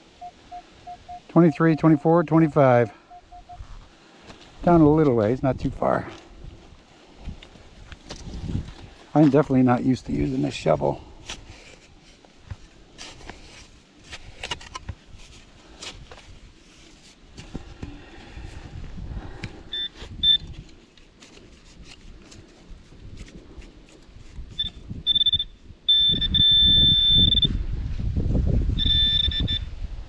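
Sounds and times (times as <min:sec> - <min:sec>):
metal detector beeps: 0:00.2 - 0:03.6, 0:19.7 - 0:20.6, 0:24.5 - 0:27.5, 0:28.8 - 0:29.7
shovel scraping soil: 0:10.2 - 0:17.5.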